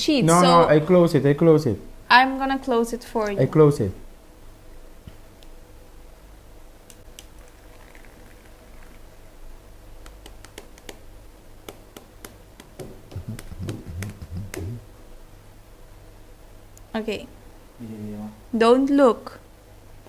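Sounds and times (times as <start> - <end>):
low thumps: 12.6 - 14.9.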